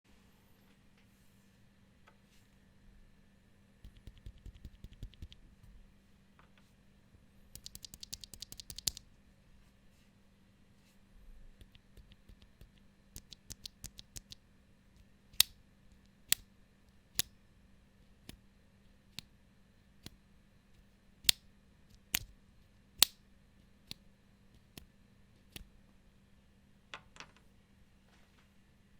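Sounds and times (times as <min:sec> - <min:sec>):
keyboard switch clacking: 0:07.6 - 0:09.0, 0:11.6 - 0:14.4.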